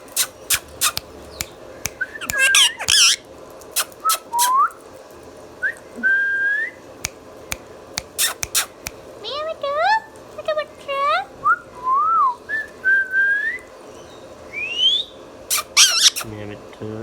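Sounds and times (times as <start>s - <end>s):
parakeet chirping: 0.0s - 3.2s, 3.8s - 4.6s, 8.0s - 9.5s, 14.0s - 16.3s
parakeet warbling squawk: 0.0s - 3.2s, 3.8s - 4.6s, 8.0s - 9.5s, 15.5s - 16.3s
rising whistles: 4.0s - 4.8s, 5.6s - 6.8s, 11.4s - 13.7s, 14.5s - 15.2s.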